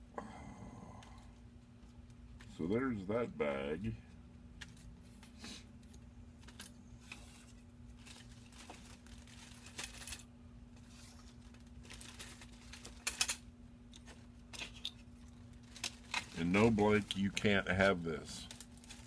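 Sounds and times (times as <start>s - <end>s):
steady low hum: 0.0s - 19.0s
plastic bag crinkling: 7.4s - 13.3s, 14.0s - 19.0s.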